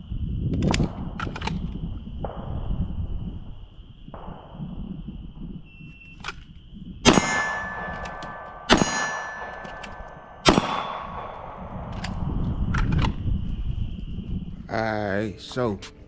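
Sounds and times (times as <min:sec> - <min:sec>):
pistol shots: 0:00.8 - 0:05.0, 0:06.2 - 0:13.2
steel target ringing: 0:07.0 - 0:12.7.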